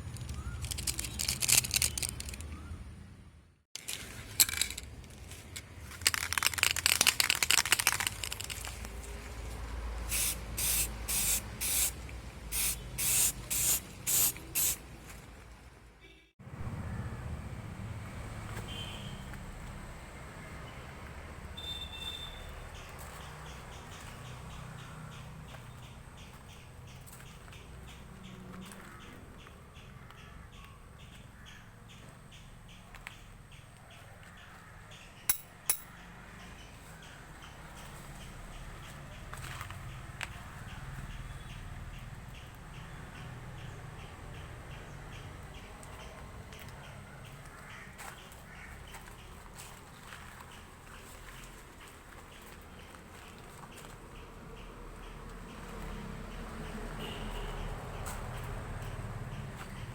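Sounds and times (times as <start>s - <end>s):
aerosol spray can hissing: 10.1s - 14.8s.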